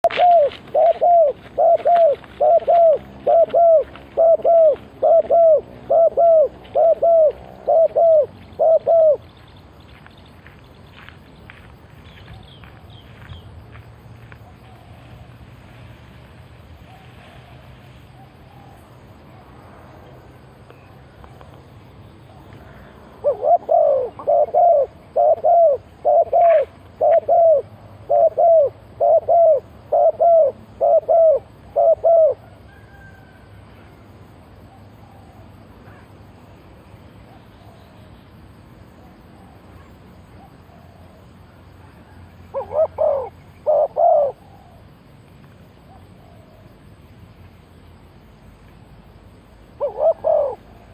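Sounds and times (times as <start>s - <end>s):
dove cooing: 0.0s - 9.3s, 22.6s - 33.4s, 41.8s - 44.8s, 49.8s - 50.9s.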